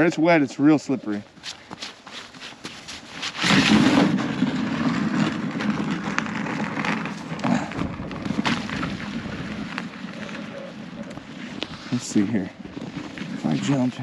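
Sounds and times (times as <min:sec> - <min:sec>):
person sliding on ice: 0:01.4 - 0:13.9.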